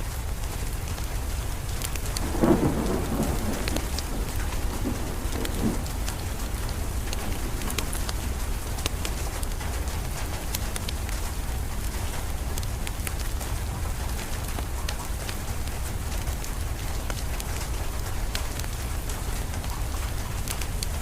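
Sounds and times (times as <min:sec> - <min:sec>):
steady rain: 0:00.0 - 0:21.0
wood fire crackling: 0:00.4 - 0:21.0
thunder rumbling: 0:01.8 - 0:10.5.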